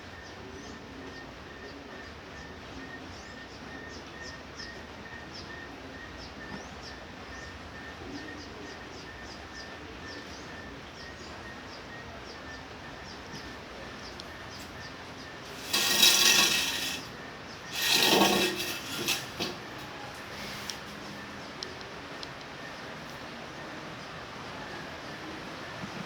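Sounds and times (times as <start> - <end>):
loud scraping rubbing noises: 15.4 - 20.9.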